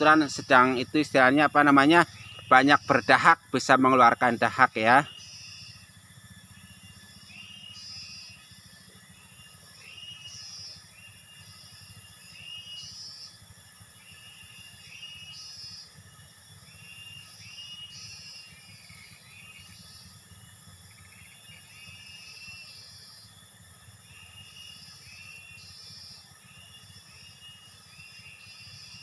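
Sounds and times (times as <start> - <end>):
short chirping calls: 0.0 - 5.9
steady high hiss: 0.0 - 29.0.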